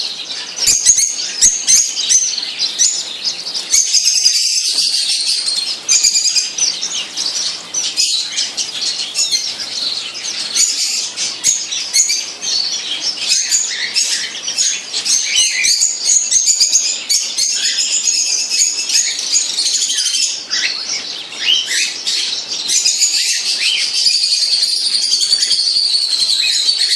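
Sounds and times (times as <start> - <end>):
small birds chirping and trilling: 0.0 - 26.9.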